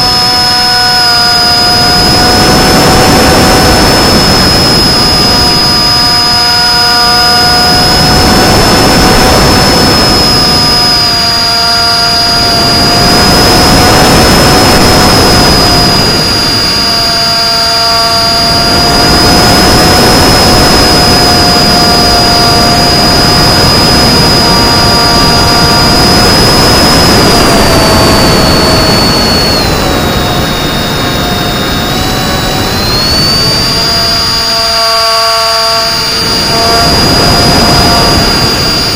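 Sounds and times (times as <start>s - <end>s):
electric motor and propeller whining: 0.0s - 38.9s
rushing air noise: 0.0s - 38.9s.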